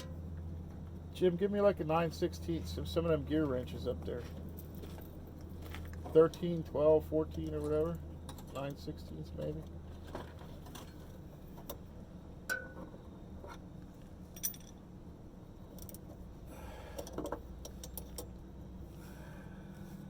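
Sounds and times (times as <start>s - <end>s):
metallic clicks of wrenches: 15.7s - 16.2s, 16.9s - 18.4s.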